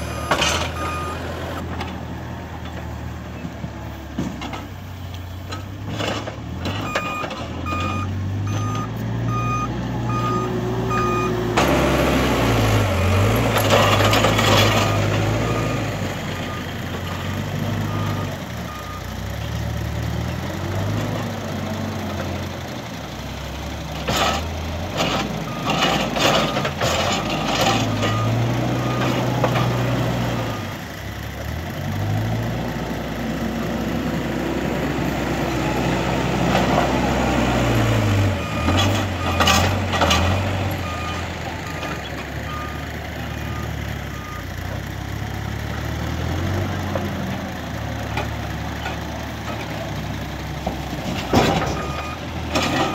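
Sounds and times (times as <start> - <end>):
reversing alarm beeping: 0.0 - 1.6, 6.8 - 11.4, 13.8 - 19.1, 27.6 - 29.8, 38.3 - 39.6, 40.3 - 42.8, 43.4 - 44.5, 51.3 - 52.9
diesel engine revving: 0.0 - 52.9.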